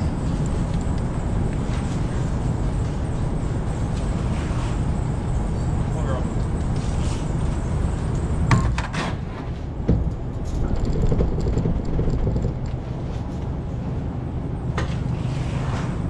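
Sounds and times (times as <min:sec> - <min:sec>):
metal clanks and rattles: 0:09.9 - 0:13.0.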